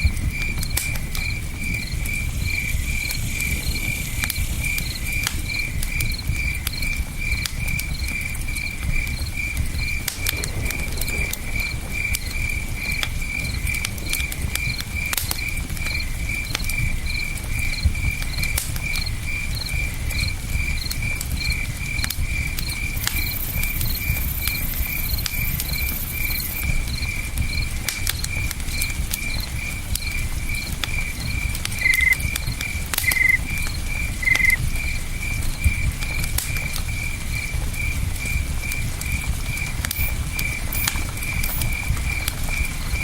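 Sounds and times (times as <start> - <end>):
campfire crackling: 0.0 - 43.0
crickets chirping: 0.0 - 43.0.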